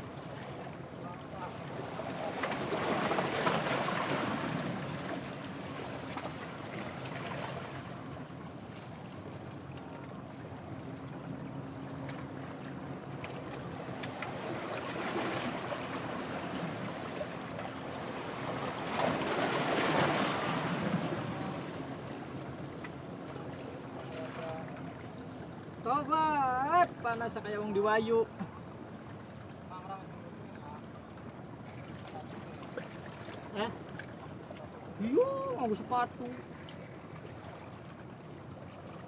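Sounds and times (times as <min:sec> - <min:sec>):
sea surf washing in: 0:17.9 - 0:22.6.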